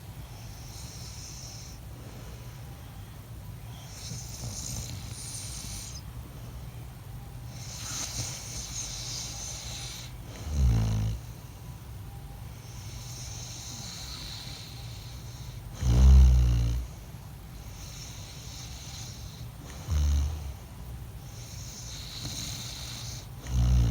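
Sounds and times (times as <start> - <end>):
hissing breaths: 3.7 - 6.6, 7.5 - 11.8, 12.6 - 23.9
man snoring: 7.8 - 11.3, 13.2 - 16.9, 18.0 - 20.6, 21.7 - 23.9.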